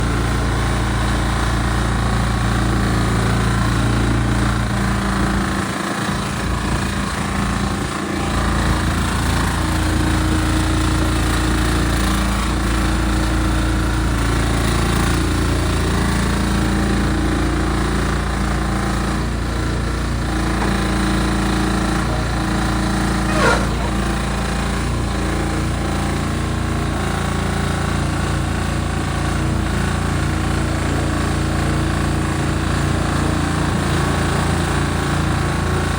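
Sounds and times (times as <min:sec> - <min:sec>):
excavator engine running: 0:00.0 - 0:35.9
short rising squeak: 0:23.1 - 0:24.3.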